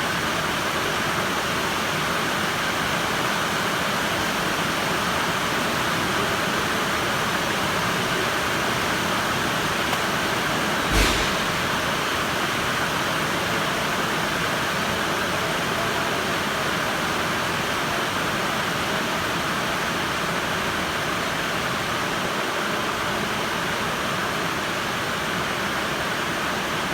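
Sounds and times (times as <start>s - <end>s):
sharp knock: 10.9s - 12.2s.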